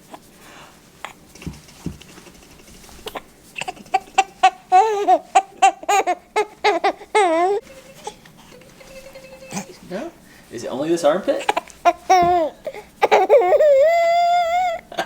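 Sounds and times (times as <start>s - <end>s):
child squealing or giggling: 11.4s - 15.0s.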